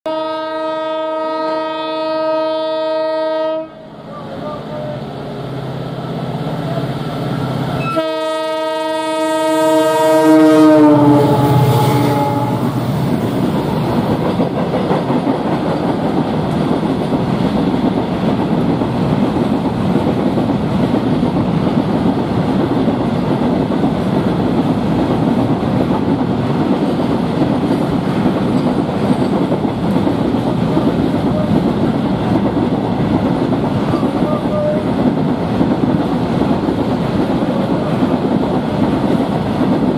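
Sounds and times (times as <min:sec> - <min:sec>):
locomotive multi-tone horn: 0:00.1 - 0:05.1, 0:07.8 - 0:13.0
freight wagons rumbling: 0:10.9 - 0:39.9
wheels clacking over rail joints: 0:12.2 - 0:39.9.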